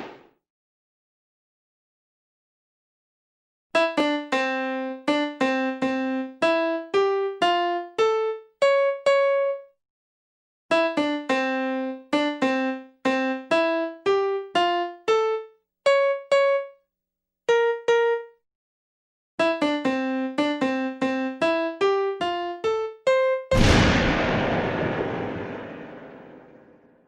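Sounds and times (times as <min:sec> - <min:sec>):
cartoon melody on keyboard: 0:03.8 - 0:09.7, 0:10.7 - 0:16.8, 0:17.5 - 0:18.4, 0:19.4 - 0:23.5.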